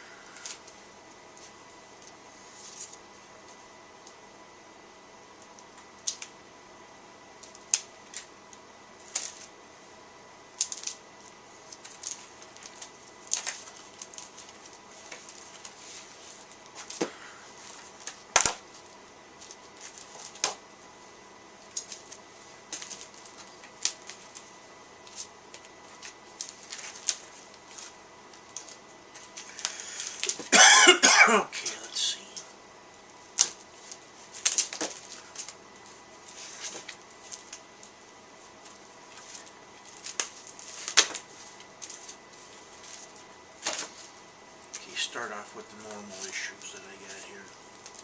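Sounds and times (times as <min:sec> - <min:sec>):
plastic packaging crinkling: 0:11.6 - 0:20.6, 0:21.6 - 0:30.5, 0:33.0 - 0:44.9, 0:45.8 - 0:48.0.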